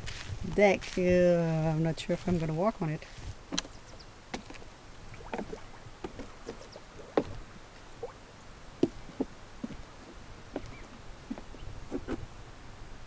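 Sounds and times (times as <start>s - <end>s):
footsteps on wooden deck: 0.0s - 1.3s, 2.1s - 8.2s, 8.8s - 12.2s.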